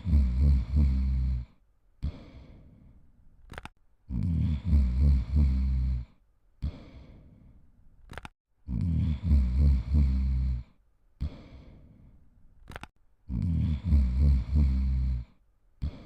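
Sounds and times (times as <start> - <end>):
cartoon rattling snore: 0.0 - 2.3, 3.6 - 6.9, 8.7 - 11.5, 12.8 - 16.0.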